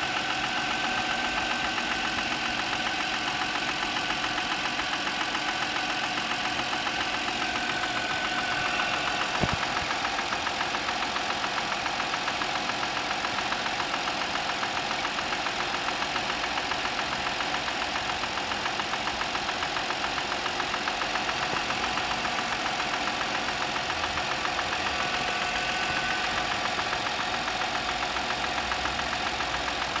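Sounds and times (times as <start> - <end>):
car engine idling with knock: 0.0 - 30.0
sharp click: 8.3 - 10.1.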